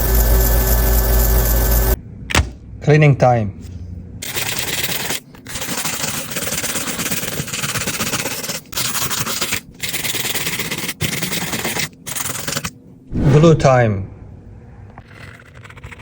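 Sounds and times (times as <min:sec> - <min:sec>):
brush scrubbing circuit board: 0:04.2 - 0:12.8.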